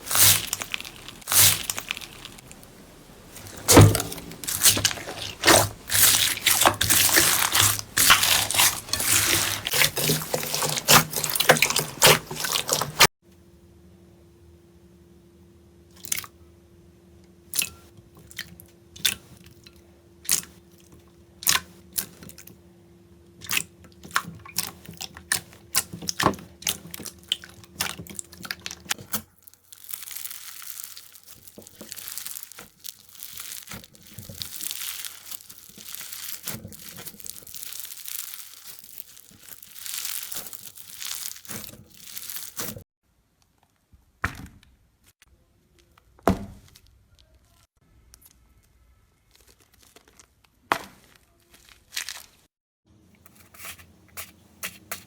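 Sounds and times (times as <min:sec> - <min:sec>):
slime popping and crackling: 0:00.0 - 0:02.6, 0:03.4 - 0:13.1, 0:24.2 - 0:42.8
faint steady hum: 0:00.0 - 0:10.3, 0:13.3 - 0:29.6.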